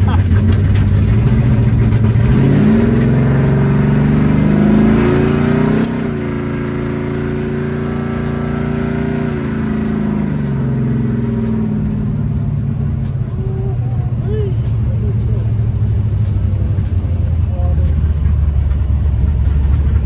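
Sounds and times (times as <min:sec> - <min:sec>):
car engine accelerating: 0:00.0 - 0:20.0
gear shift click: 0:00.2 - 0:06.9, 0:16.1 - 0:17.2.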